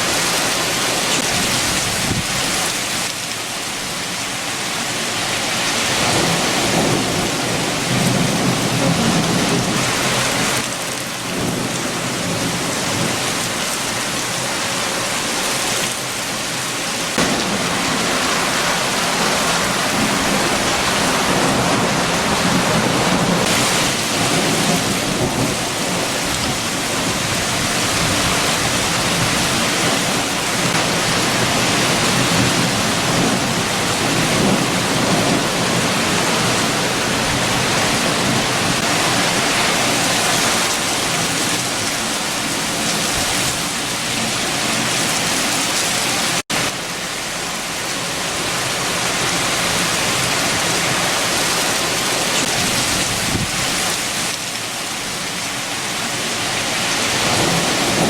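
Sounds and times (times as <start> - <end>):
heavy rain hissing: 0.0 - 58.0
strong wind rumble: 0.1 - 3.0, 17.1 - 45.7, 49.6 - 54.4, 56.2 - 58.0.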